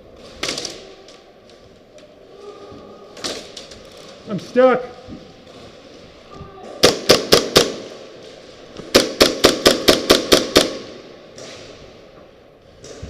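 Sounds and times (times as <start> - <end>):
airsoft gun firing rapid shots: 6.8 - 7.9, 8.9 - 11.0.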